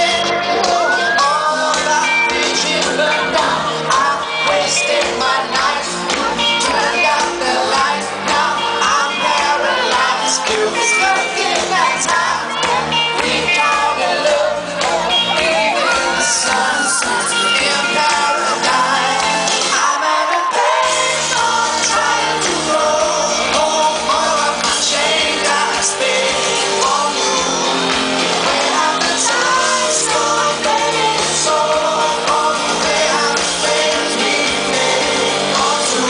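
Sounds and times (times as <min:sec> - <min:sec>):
pop-rock song with singer: 0:00.0 - 0:36.0.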